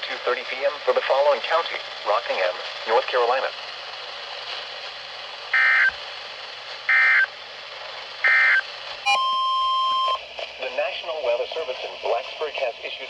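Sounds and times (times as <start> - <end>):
steady radio hiss: 0.0 - 8.6, 10.6 - 13.0
warbling digital data tones: 8.3 - 10.2.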